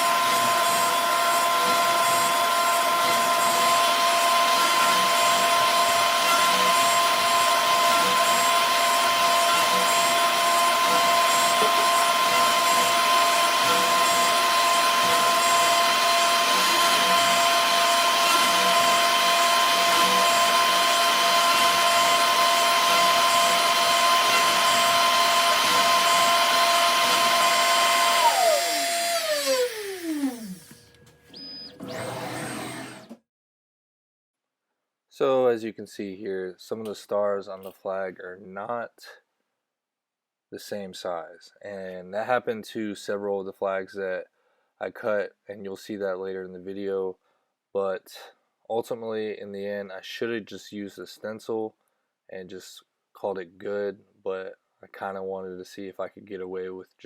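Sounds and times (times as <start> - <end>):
electric motor whining: 0.0 - 33.2.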